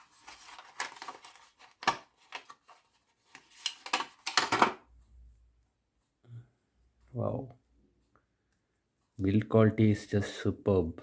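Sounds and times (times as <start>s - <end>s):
cable packaging clicks and rustles: 0.0s - 4.8s.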